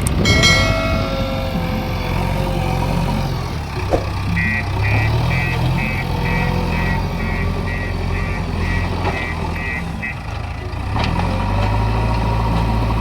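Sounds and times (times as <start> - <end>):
diesel engine running: 0.0 - 13.0
beeping alarm: 0.2 - 10.3.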